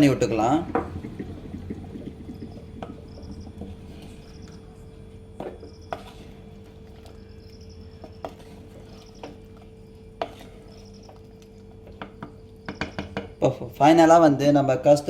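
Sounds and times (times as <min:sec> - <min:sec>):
steady low hum: 0:00.0 - 0:15.0
high chirping trills: 0:02.3 - 0:05.0, 0:10.7 - 0:11.4
spoon stirring curry in a pot: 0:02.4 - 0:13.4
spoon knocking against clay pot: 0:11.8 - 0:13.4.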